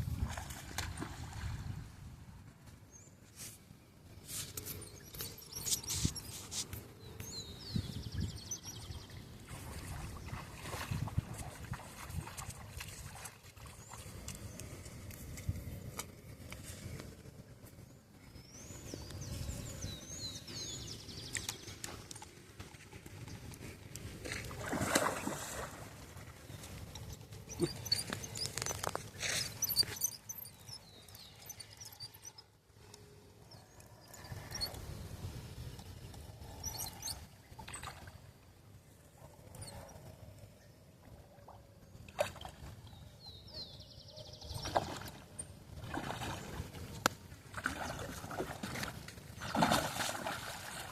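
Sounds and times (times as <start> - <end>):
wavering high chirping: 4.8 - 6.5, 27.0 - 32.4
water sloshing against boat: 7.8 - 15.4, 20.5 - 32.5, 44.6 - 50.9.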